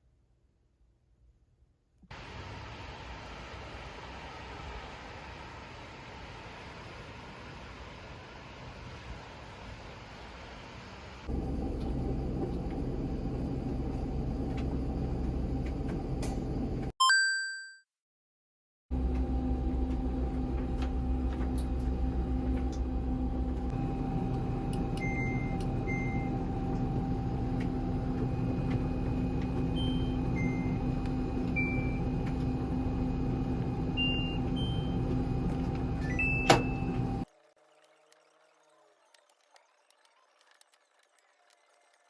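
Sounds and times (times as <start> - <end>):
laundry machine humming: 11.3 - 16.9, 18.9 - 37.3.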